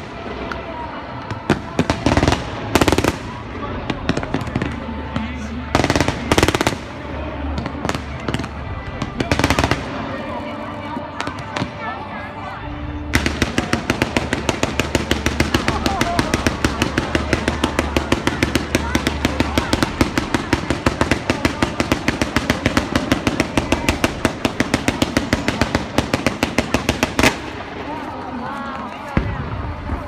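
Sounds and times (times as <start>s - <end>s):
faint voices of onlookers: 0.0s - 30.0s
fireworks popping: 13.1s - 30.0s.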